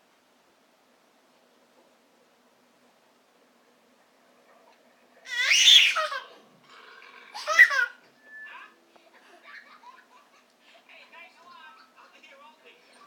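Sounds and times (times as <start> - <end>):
baby laughing: 5.3 - 6.4, 7.3 - 8.1.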